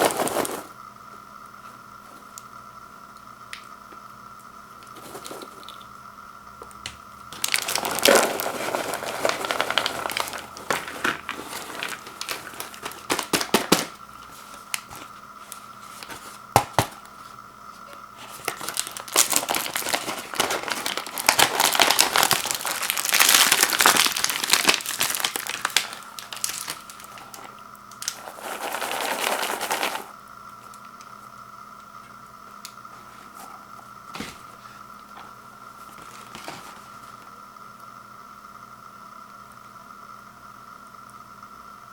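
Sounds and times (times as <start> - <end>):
plastic wrapping crinkling: 0.0 - 0.7, 7.3 - 30.1, 33.2 - 37.3.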